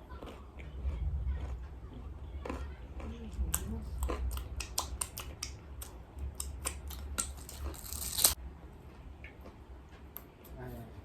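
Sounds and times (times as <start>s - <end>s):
crunching fried chicken: 0.0s - 8.4s.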